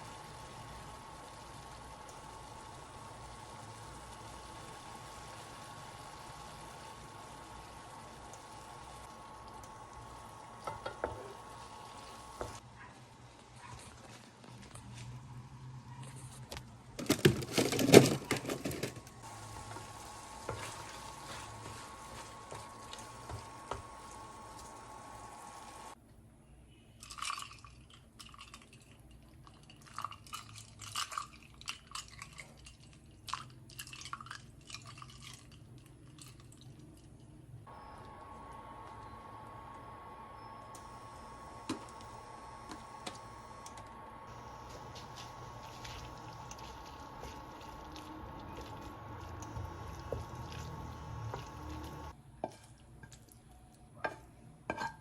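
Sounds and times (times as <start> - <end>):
background hum: 34.9 - 54.7.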